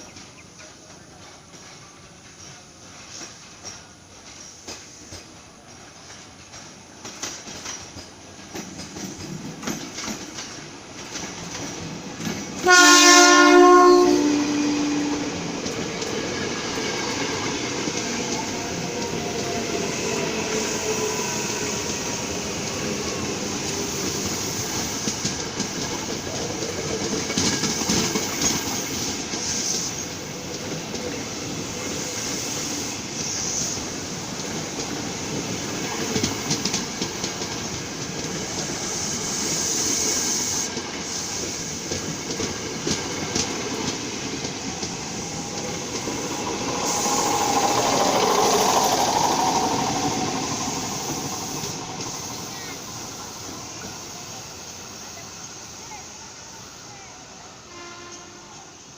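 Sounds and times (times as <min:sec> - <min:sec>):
electric train rumbling past: 0:00.0 - 0:58.9
rail noise: 0:00.0 - 0:58.9
two-note train horn: 0:12.6 - 0:15.4, 0:57.6 - 0:58.7.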